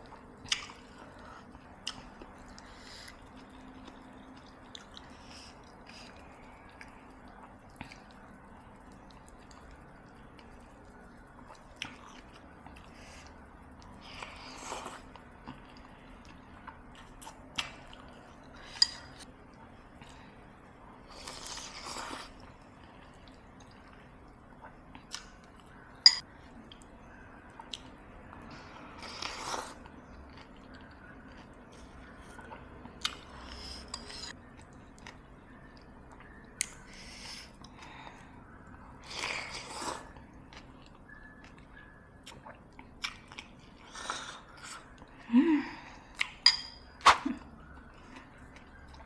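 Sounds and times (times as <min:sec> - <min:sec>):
spoon clinking on bowl: 0:26.0 - 0:26.2, 0:46.4 - 0:46.8
slurping and chewing: 0:38.9 - 0:41.6.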